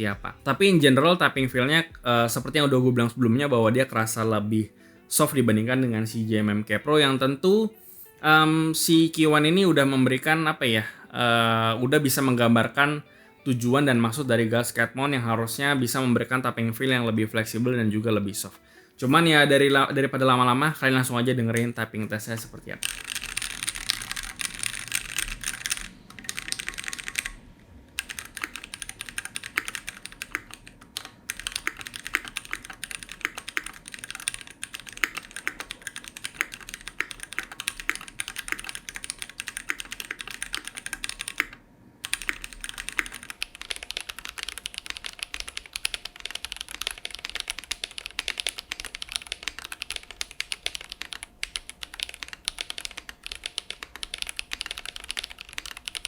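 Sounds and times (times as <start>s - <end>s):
mechanical keyboard key clacking: 22.4s - 27.4s, 28.0s - 56.0s.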